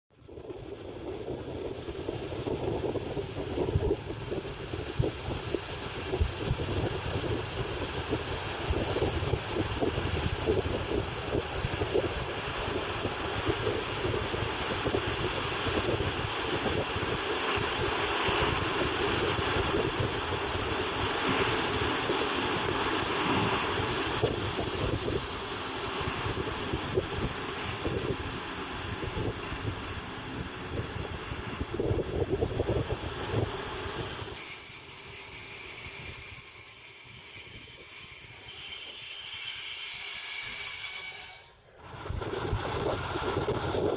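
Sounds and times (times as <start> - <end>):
wind on microphone: 0.2 - 38.2, 41.8 - 43.9
train rumbling: 0.2 - 43.9
high brake squeal: 22.0 - 30.4, 33.1 - 41.8
hiss: 32.6 - 41.5.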